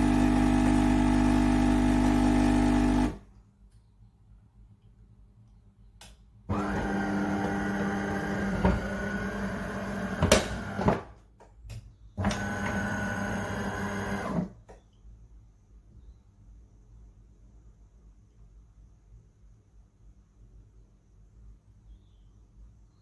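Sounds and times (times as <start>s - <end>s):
coffee machine humming: 0.0s - 3.3s, 6.5s - 11.1s, 12.2s - 14.7s.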